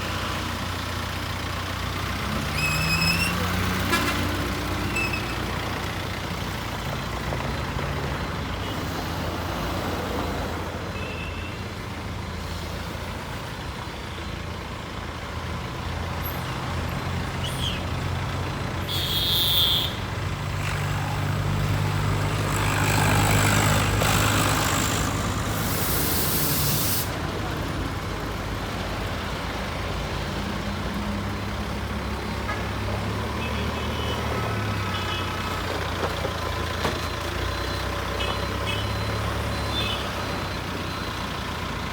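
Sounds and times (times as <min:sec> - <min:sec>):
diesel engine running: 0:11.9 - 0:41.9
short hiss: 0:25.6 - 0:27.2.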